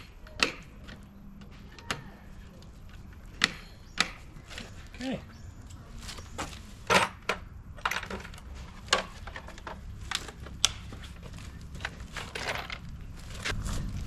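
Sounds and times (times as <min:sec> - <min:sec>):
clicks and rustles of small items: 0:05.7 - 0:13.6.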